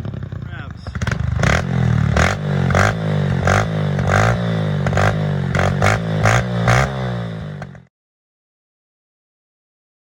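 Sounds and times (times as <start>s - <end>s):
motorcycle engine revving: 0.0s - 7.9s.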